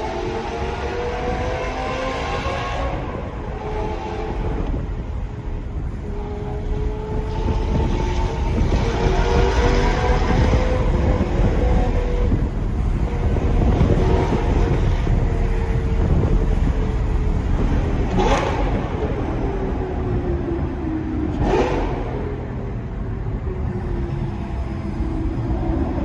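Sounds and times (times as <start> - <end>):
car engine rumbling at speed: 0.0 - 26.0
exhaust cracks: 2.6 - 19.6.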